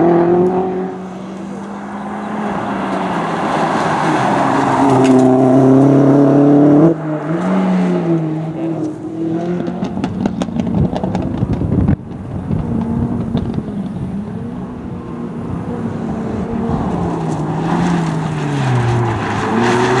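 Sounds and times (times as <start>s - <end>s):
engine crackles: 0.0s - 20.0s
race car engine running hard: 0.0s - 20.0s.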